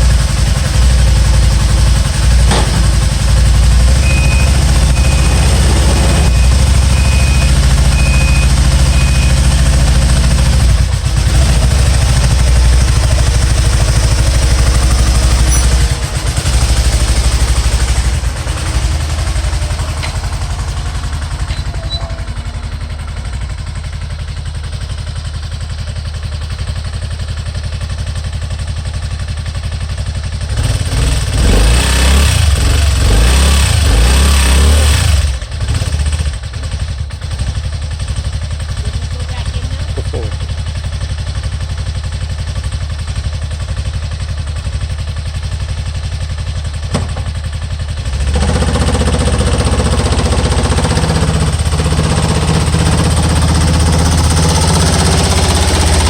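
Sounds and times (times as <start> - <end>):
engine revving: 0.0 - 22.6, 30.5 - 36.4, 48.0 - 56.0
engine running with misfire: 0.0 - 56.0.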